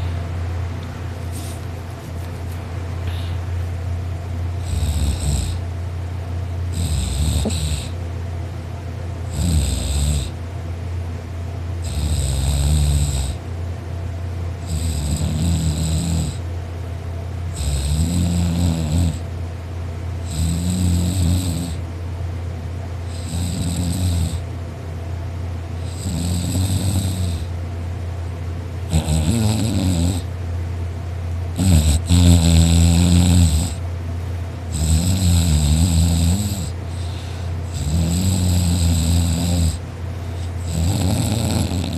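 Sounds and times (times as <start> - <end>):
steady low hum: 0.0 - 41.9
person snoring loudly: 4.6 - 5.6, 6.7 - 8.0, 9.3 - 10.4, 11.8 - 13.4, 14.6 - 16.4, 17.6 - 19.2, 20.3 - 21.8, 23.1 - 24.4, 25.8 - 27.5, 28.9 - 30.3, 31.6 - 33.8, 34.7 - 39.8, 40.4 - 41.9.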